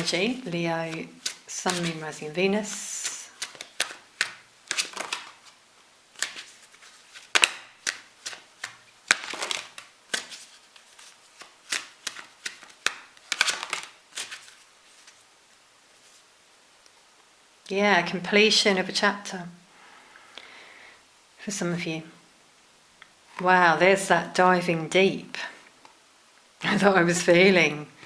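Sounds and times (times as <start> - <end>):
cards being shuffled: 0.0 - 15.3.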